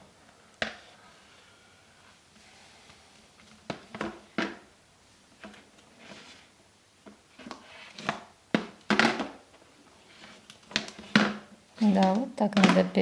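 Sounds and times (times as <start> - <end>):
toy blocks knocking and clattering: 10.9 - 13.0.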